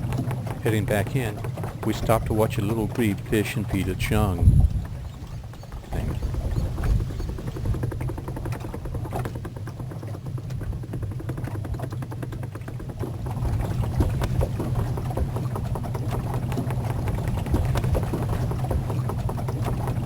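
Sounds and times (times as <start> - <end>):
small boat motor running: 0.0 - 20.0.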